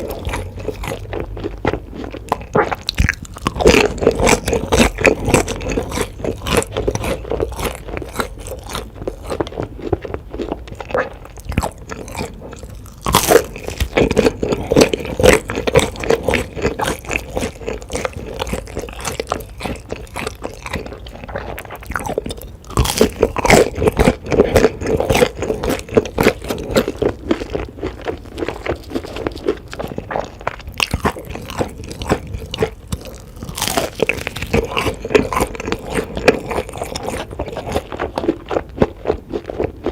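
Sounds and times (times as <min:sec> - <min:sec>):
chewing crunchy food: 0:00.0 - 0:39.9.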